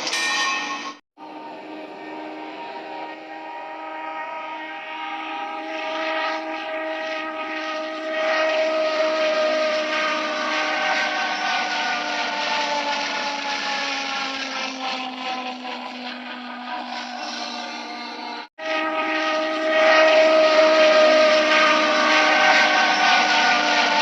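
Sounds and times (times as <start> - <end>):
train horn chord: 0.0 - 12.6, 18.6 - 24.0.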